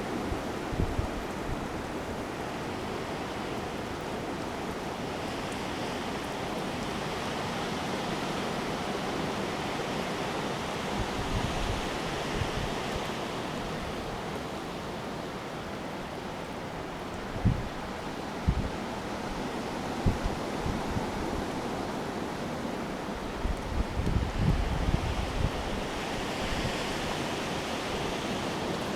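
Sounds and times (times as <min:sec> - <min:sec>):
wind gusts buffeting microphone: 0:17.3 - 0:21.6, 0:23.1 - 0:28.8.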